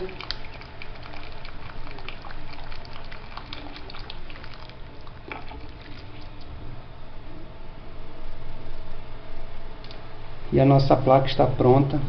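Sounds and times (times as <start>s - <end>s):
hot water bubbling: 0.0s - 6.7s.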